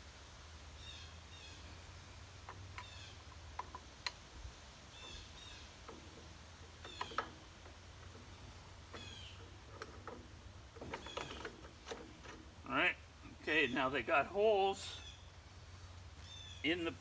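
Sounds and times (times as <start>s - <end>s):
birds chirping: 2.5s - 3.8s, 4.7s - 17.0s
metal pins clinking: 5.0s - 13.4s.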